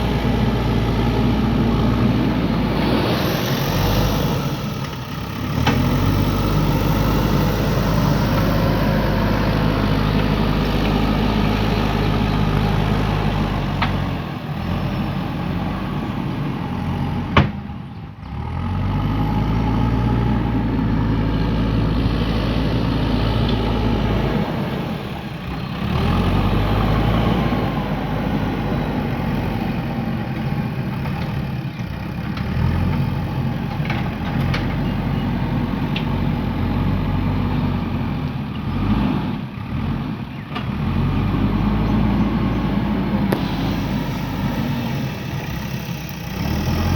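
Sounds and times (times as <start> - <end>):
diesel engine under varying load: 0.0 - 46.9.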